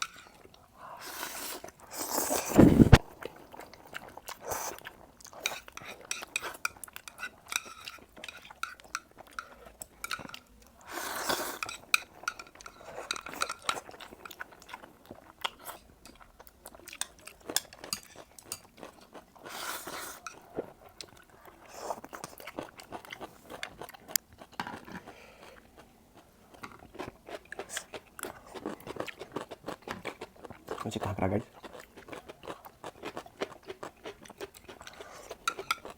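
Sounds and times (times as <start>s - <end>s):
chewing and biting: 13.2s - 35.9s.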